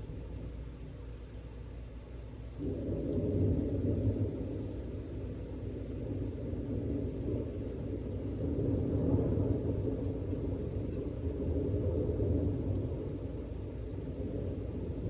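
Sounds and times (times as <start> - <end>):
thunder rumbling: 0.0 - 1.9, 2.5 - 15.0.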